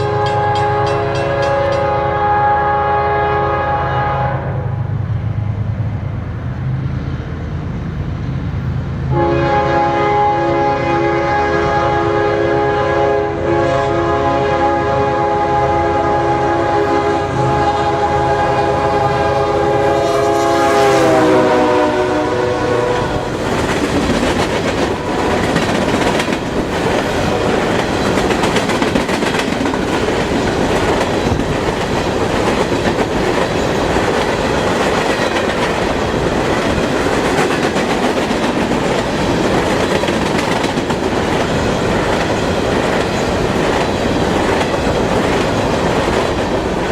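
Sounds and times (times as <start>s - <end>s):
locomotive air horn: 0.0s - 4.9s, 9.1s - 23.4s
freight cars wheels on rails: 23.0s - 46.9s.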